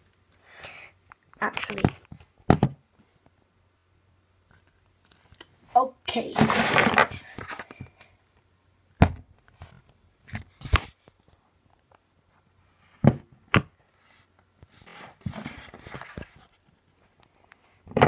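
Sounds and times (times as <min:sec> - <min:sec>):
shuffling and rustling: 0:06.1 - 0:08.0, 0:13.9 - 0:18.0.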